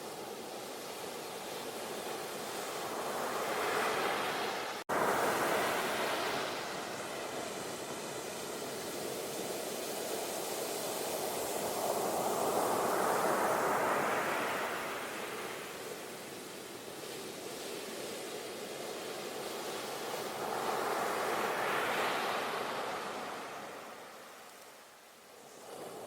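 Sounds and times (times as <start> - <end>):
ocean waves breaking: 2.6 - 9.2.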